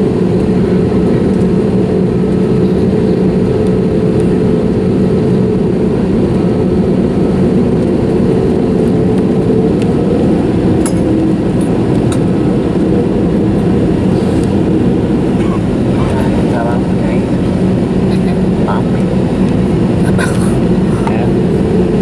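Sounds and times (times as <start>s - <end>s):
jet airliner engine noise: 0.0s - 22.0s.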